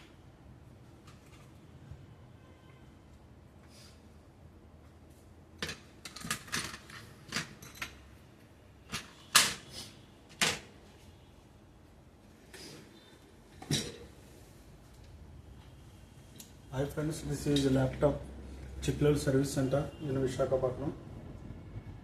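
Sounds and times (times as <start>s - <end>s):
hard objects clicking and knocking: 5.6s - 8.1s.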